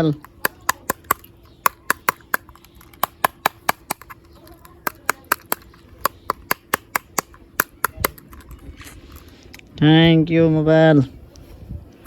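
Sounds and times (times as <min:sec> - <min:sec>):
rapid sharp clicks: 0:00.0 - 0:09.3.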